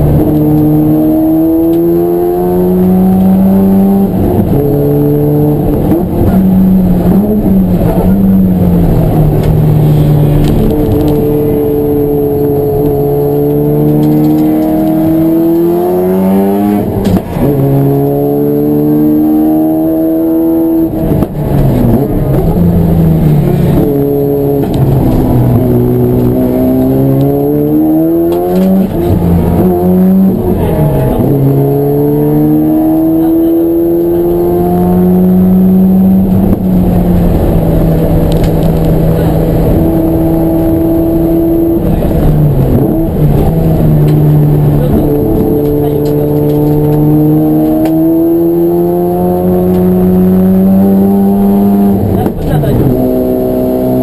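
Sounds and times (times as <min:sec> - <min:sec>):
race car engine revving hard: 0:00.0 - 0:54.0.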